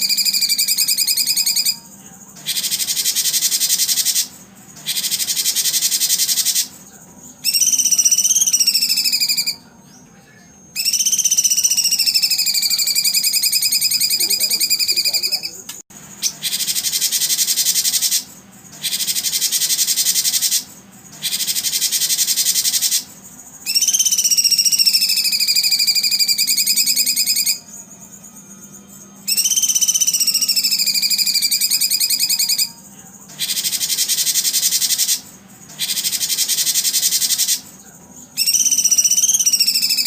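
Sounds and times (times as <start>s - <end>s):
buzzy songbird trills: 0.0s - 6.8s, 10.8s - 15.6s, 16.2s - 37.6s, 38.4s - 40.0s
whistled bird trills falling in pitch: 7.4s - 9.6s, 10.8s - 15.6s, 23.7s - 27.6s, 29.3s - 32.8s, 38.4s - 40.0s.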